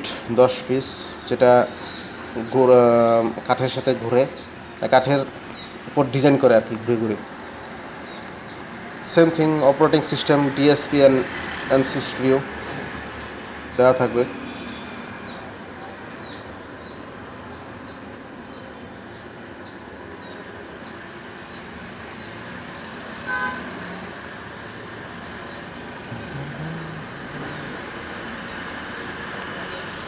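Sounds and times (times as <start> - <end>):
outdoor traffic noise: 0.0 - 30.0
car horn toot: 23.3 - 23.8.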